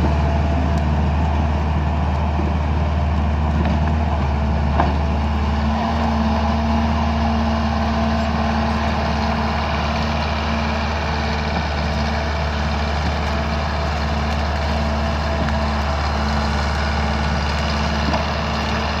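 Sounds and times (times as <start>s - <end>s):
bulldozer diesel engine running: 0.0s - 19.0s.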